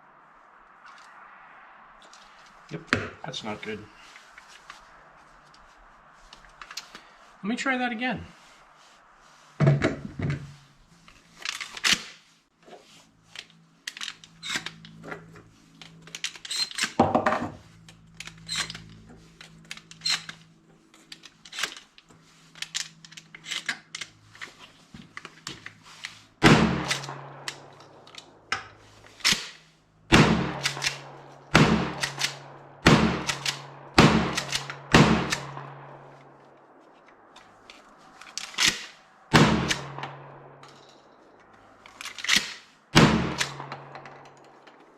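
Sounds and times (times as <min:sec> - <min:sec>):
shotgun being handled and loaded: 0:02.0 - 0:07.1, 0:09.7 - 0:29.7, 0:30.4 - 0:44.9
shotgun shots: 0:26.4 - 0:27.7, 0:30.1 - 0:36.1, 0:39.3 - 0:40.4, 0:43.0 - 0:44.0.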